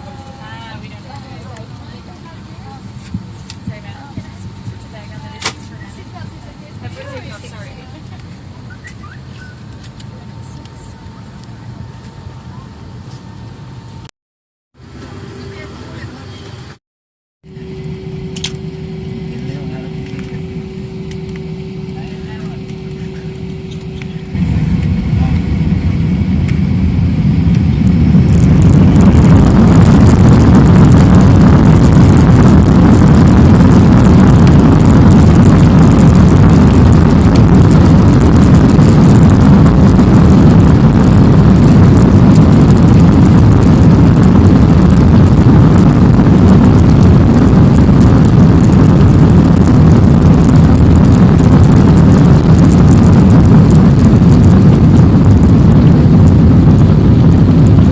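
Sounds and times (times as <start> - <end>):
jet engines spooling up: 17.5 - 57.9.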